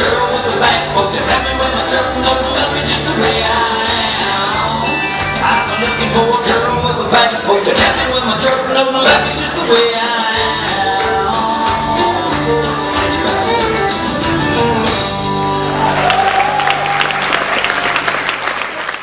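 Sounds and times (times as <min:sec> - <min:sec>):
country music instrumental: 0:00.0 - 0:16.4
audience applause: 0:15.6 - 0:19.0.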